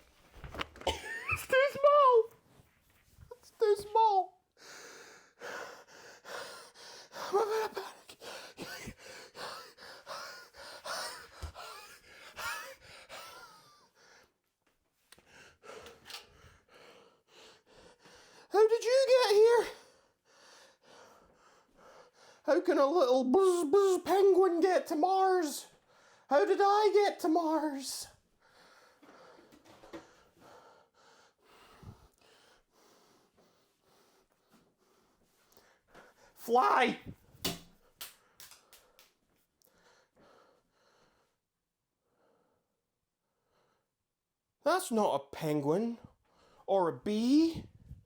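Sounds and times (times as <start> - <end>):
man gasping and breathing hard: 4.6 - 14.3
man whimpering: 7.2 - 9.8.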